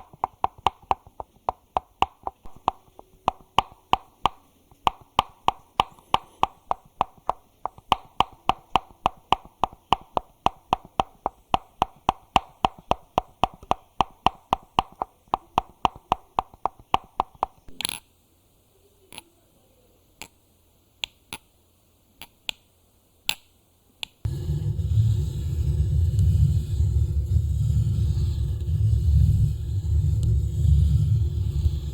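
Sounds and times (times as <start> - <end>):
rapid clicking or tapping: 0.0 - 17.7
rubbing against microphone: 24.3 - 31.9.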